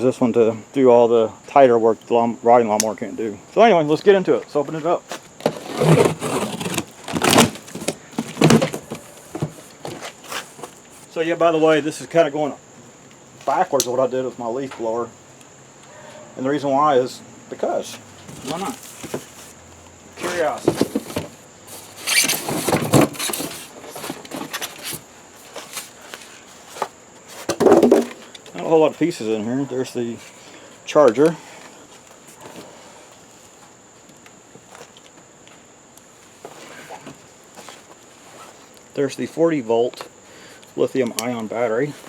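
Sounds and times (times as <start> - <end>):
clicks and scrapes: 5.4 - 10.7
cardboard rubbing and scraping: 5.4 - 11.1, 18.3 - 19.5, 20.2 - 25.8.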